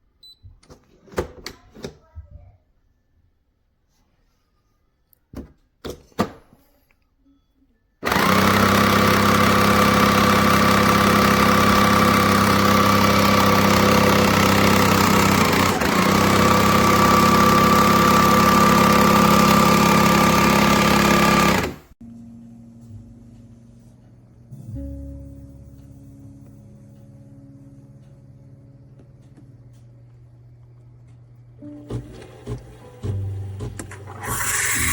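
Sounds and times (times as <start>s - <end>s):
espresso machine humming: 8.1s - 21.9s, 27.7s - 34.9s.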